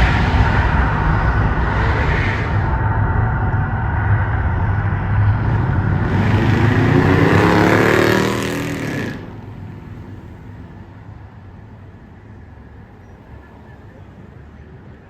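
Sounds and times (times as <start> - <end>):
rumbling roar with hissing whoosh: 0.0 - 10.8.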